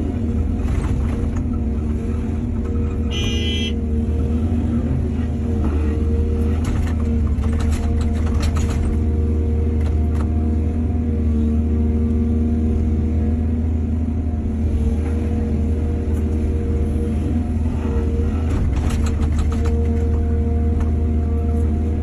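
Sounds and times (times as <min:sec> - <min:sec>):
diesel machinery droning: 0:00.0 - 0:22.0.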